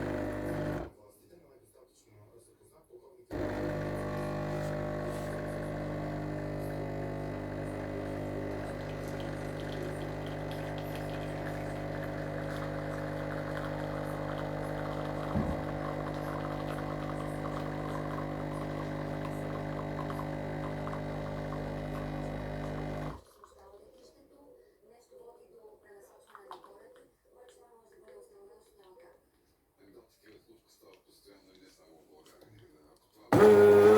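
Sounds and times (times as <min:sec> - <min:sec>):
espresso machine pump humming: 0:00.0 - 0:00.9, 0:03.3 - 0:23.2, 0:33.4 - 0:33.9.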